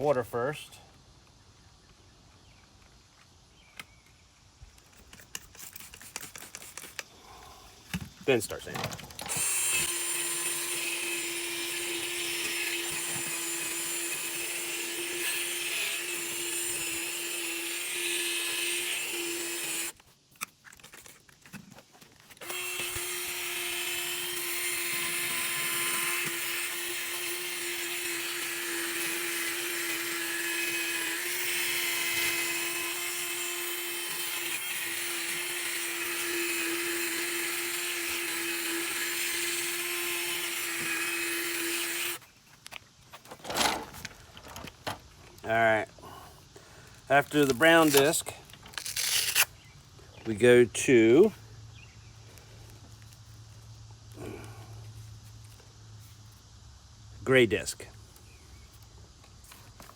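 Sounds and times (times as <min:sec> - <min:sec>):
gritty sanding scraping: 0:04.9 - 0:07.1
electric drill motor whine: 0:09.2 - 0:20.0, 0:22.3 - 0:42.3.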